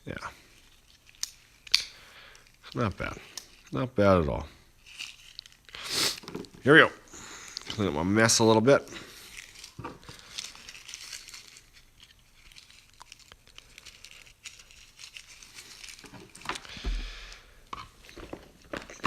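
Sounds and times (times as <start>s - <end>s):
paper crumpling and rustling: 4.8s - 6.6s, 9.1s - 16.8s
dull thump: 16.8s - 17.3s.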